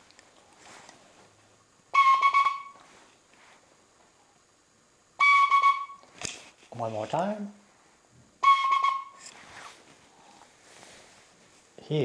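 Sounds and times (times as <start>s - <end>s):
flute notes on one pitch: 1.9s - 2.8s, 5.2s - 6.0s, 8.4s - 9.2s.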